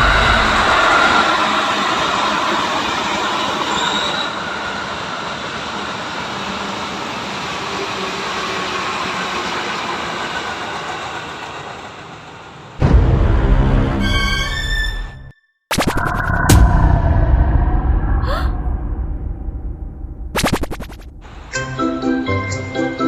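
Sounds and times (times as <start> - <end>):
train running on rails: 0.0 - 14.8
faint wheel squeals: 3.6 - 4.5
music: 12.8 - 15.4, 21.4 - 23.0.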